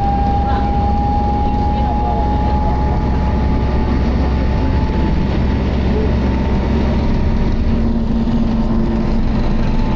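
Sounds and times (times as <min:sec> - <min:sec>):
bus engine and road noise drone: 0:00.0 - 0:09.9
deeper tone: 0:00.0 - 0:09.9
thin steady whine: 0:00.0 - 0:09.9.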